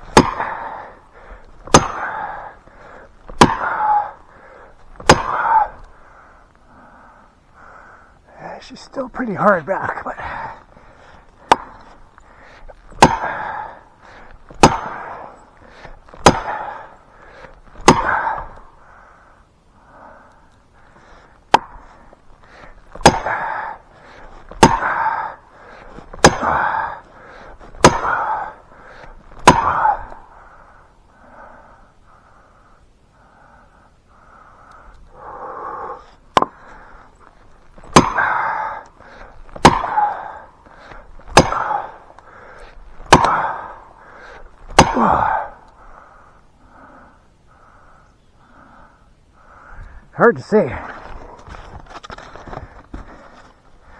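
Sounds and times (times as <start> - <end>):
hammer striking steel wedge: 0.1 - 0.5, 1.7 - 2.1, 3.4 - 3.7, 5.1 - 5.4, 13.0 - 13.3, 14.6 - 15.0, 16.2 - 16.6, 17.8 - 18.2, 23.0 - 23.3, 24.6 - 24.9, 26.2 - 26.6, 27.8 - 28.2, 37.9 - 38.2, 39.6 - 40.0, 41.4 - 41.7, 43.1 - 43.4, 44.8 - 45.1.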